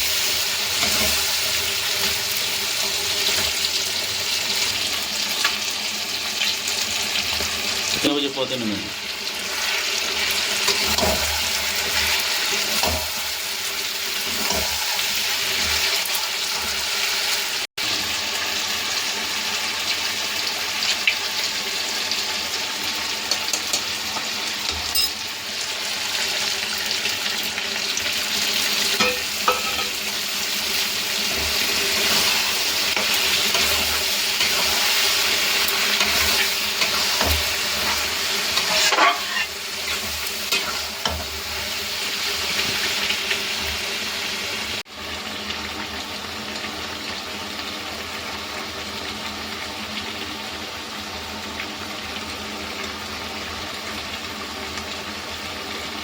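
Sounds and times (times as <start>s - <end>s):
chicken sizzling in a pan: 0.0s - 56.0s
spatula scraping and tapping pan: 14.3s - 15.0s, 29.0s - 30.0s, 35.9s - 41.2s.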